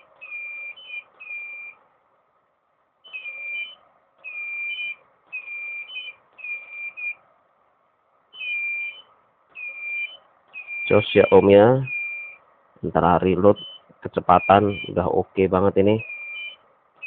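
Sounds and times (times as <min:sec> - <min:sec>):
high two-tone beep: 0:13.6 - 0:15.1.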